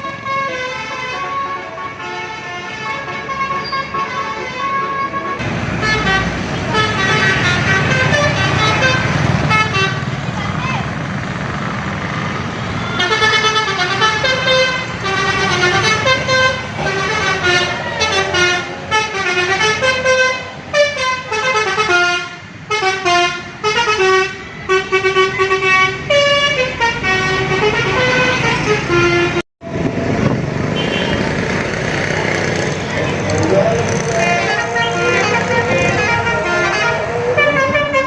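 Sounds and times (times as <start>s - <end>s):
bus engine rumble: 0.0s - 38.0s
musical air horn melody: 13.0s - 29.4s, 34.2s - 38.0s.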